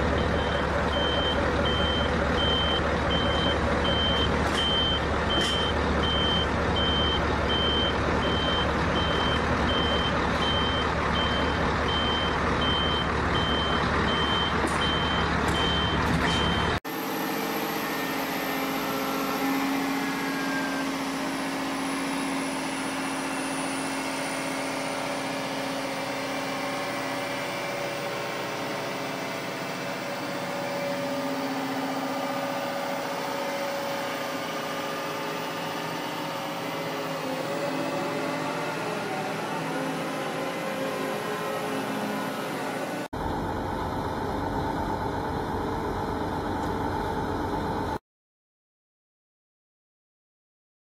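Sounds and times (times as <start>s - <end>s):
reversing alarm beeping: 0.0s - 16.8s, 18.8s - 29.0s
heavy truck engine running: 0.0s - 48.0s.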